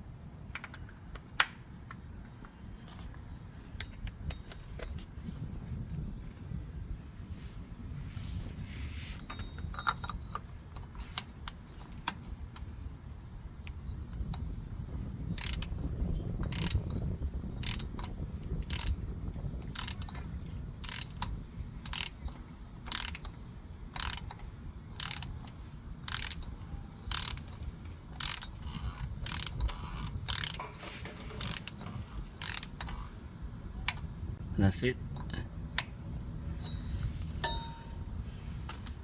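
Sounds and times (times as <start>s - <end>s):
low steady rumble: 0.0s - 39.0s
ratcheting torque wrench clicking: 15.3s - 15.7s, 16.4s - 17.0s, 17.6s - 19.0s, 19.6s - 30.7s, 31.4s - 33.1s.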